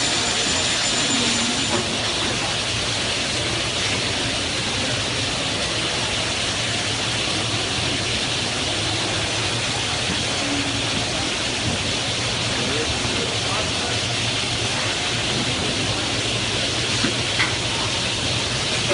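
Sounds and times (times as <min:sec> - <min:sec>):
cutting saw running: 0:00.0 - 0:02.4.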